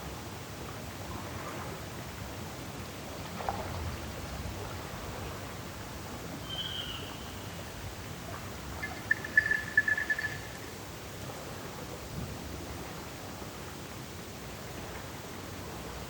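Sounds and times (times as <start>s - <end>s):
bird whistle: 6.4s - 7.7s, 8.8s - 10.7s
bird chirps: 6.4s - 7.8s, 8.8s - 10.8s.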